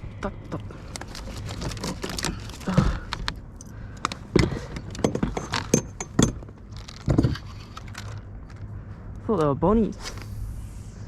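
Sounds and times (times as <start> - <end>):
fishing tackle clicks and rattles: 0.8 - 8.7.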